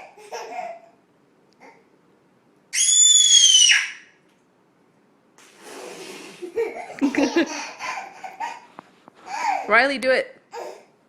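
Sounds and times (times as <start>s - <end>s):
baby shrieking with laughter: 2.7s - 4.2s, 7.6s - 9.7s.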